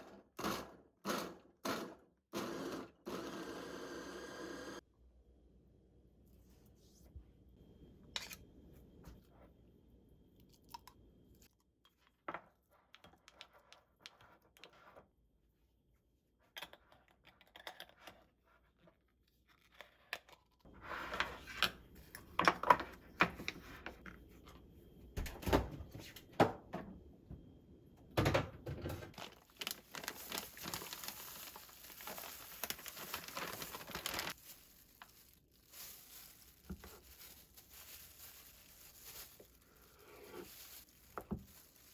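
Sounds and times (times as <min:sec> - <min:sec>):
rustling and tearing: 0:29.2 - 0:41.9.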